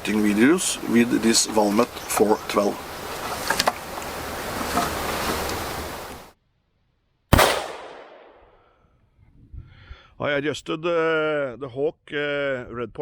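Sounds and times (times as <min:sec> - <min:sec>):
gunshot with echo: 0:07.3 - 0:08.6
wind on microphone: 0:09.2 - 0:09.9.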